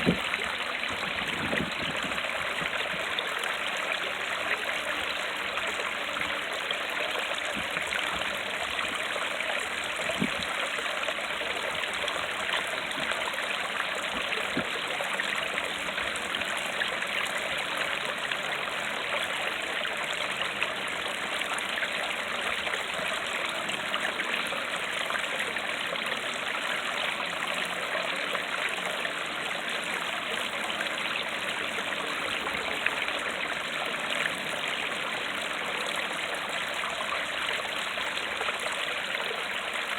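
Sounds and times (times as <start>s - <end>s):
small waterfall splashing: 0.0s - 39.9s
water rushing over rocks: 0.0s - 39.9s.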